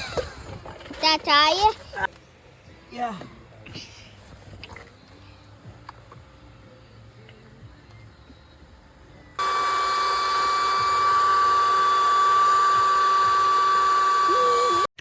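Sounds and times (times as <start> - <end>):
electric blower motor whining: 9.4 - 15.0.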